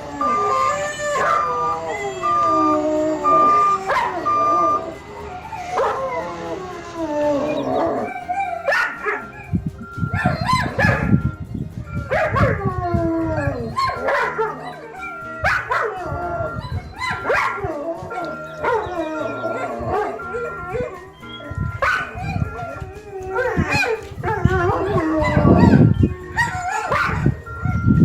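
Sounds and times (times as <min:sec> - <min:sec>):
canines howling and yipping: 0:00.0 - 0:28.0
truck backup alarm beeping: 0:00.0 - 0:28.0.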